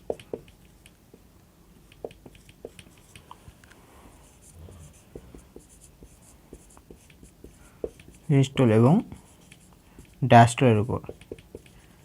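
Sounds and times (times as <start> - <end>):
writing tip tapping: 0.0 - 1.2, 1.9 - 3.2, 5.1 - 8.2, 11.0 - 11.8
pen scratching on paper: 4.2 - 8.4.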